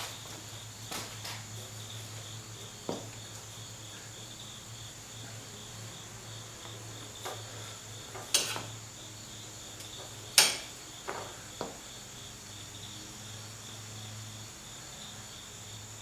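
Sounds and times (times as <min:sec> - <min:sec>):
metal tools clinking on bolts: 0:08.2 - 0:08.7, 0:09.8 - 0:10.8.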